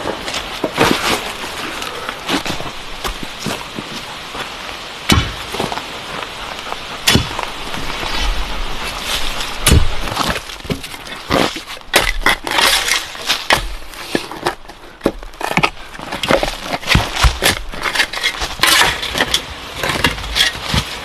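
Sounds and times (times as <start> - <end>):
steady hiss: 0.1 - 10.6.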